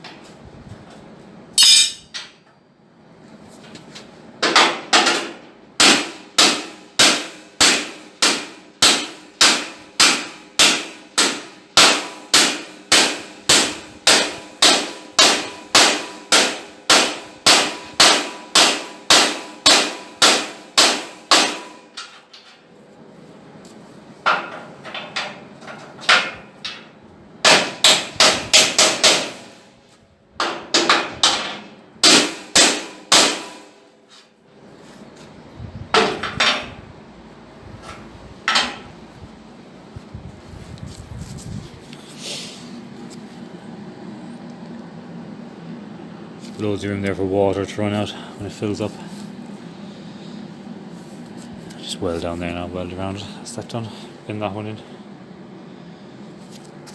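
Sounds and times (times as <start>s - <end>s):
hammer ringing on steel: 1.6s - 2.1s.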